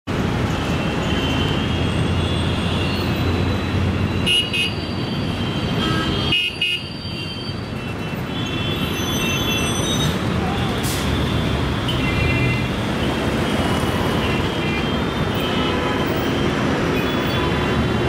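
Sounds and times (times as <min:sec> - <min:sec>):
road traffic rumbling: 0:00.1 - 0:18.0
vehicle horns tooting: 0:04.1 - 0:13.2, 0:14.1 - 0:17.8.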